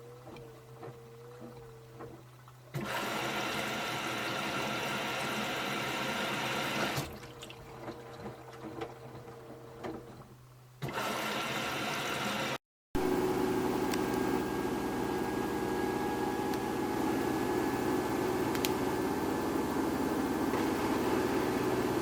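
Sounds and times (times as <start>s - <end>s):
low machine hum: 0.0s - 10.8s, 13.0s - 22.0s
water rushing into washing machine: 0.0s - 22.0s
water sloshing: 7.0s - 10.3s.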